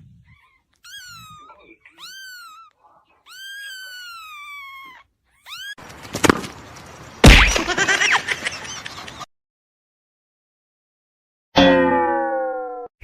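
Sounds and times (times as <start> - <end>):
cat meowing: 0.3 - 5.8
loud thump: 7.2 - 7.7
sharp knock: 7.2 - 7.7.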